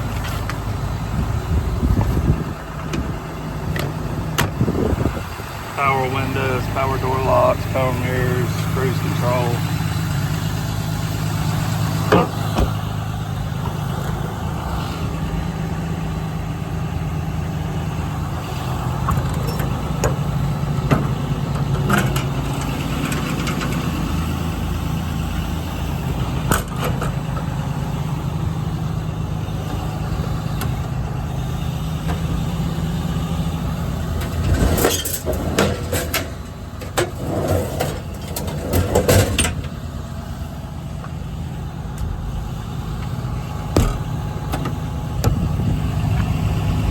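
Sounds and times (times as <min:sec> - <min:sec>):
diesel engine idling: 0:00.0 - 0:46.9
knocks: 0:43.7 - 0:44.3.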